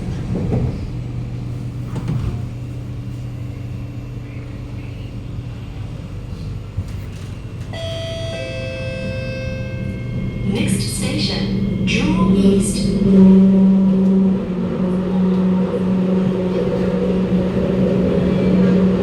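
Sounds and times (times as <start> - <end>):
train running gear hum: 0.0 - 19.0
steady ringing tone: 7.7 - 13.8.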